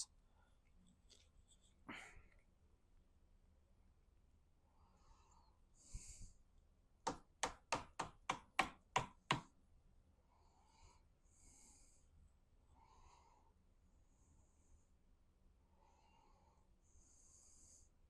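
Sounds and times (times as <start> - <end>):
faint breaths: 4.6 - 6.6, 10.2 - 18.0
quick sharp taps: 7.1 - 9.5.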